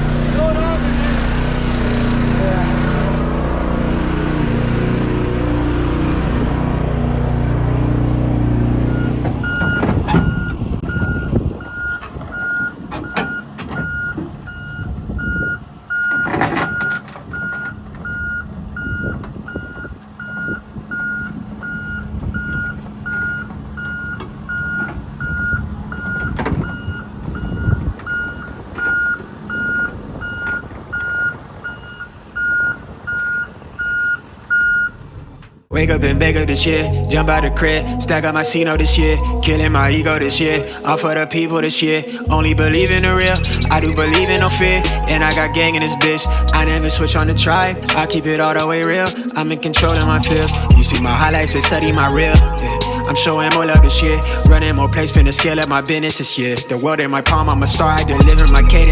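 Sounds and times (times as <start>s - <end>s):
loud engine running: 0.0s - 12.3s, 35.7s - 41.0s, 42.2s - 58.9s
truck rumble: 0.0s - 58.9s
vehicle reversing alarm beeping: 0.0s - 58.9s.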